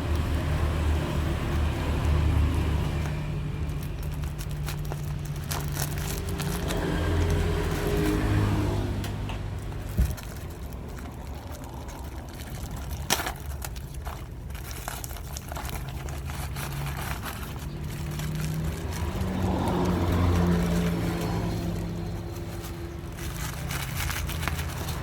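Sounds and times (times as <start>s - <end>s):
motor engine humming: 0.0s - 25.0s.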